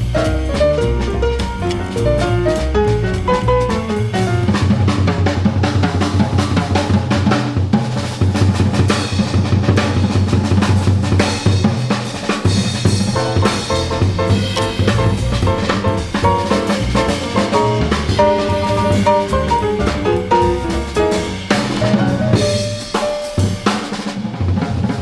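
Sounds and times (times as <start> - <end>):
piano notes: 0.0 - 7.7, 12.5 - 24.3
drum kit playing: 0.0 - 25.0
jazz piano trio playing: 0.0 - 25.0.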